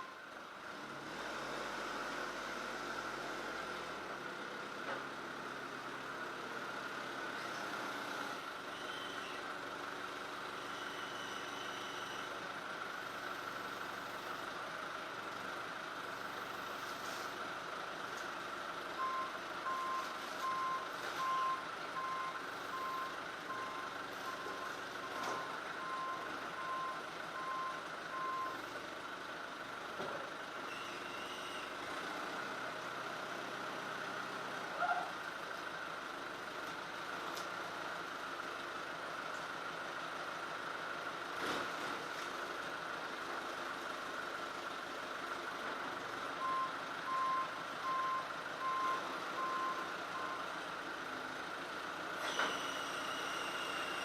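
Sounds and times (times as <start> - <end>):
engine hum: 0.0 - 54.0
reversing alarm beeping: 19.0 - 28.6, 46.4 - 50.5.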